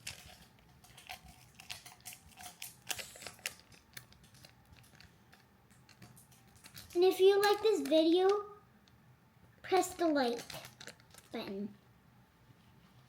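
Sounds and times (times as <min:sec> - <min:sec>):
plastic craft supplies clicking: 0:00.0 - 0:08.4, 0:09.9 - 0:11.4.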